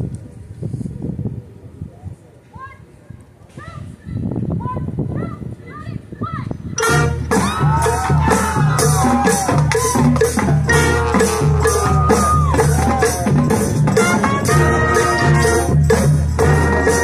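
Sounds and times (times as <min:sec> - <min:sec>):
brass with bending notes: 0:06.8 - 0:17.0
drum and percussion beat: 0:06.8 - 0:17.0
low bass line: 0:06.8 - 0:17.0.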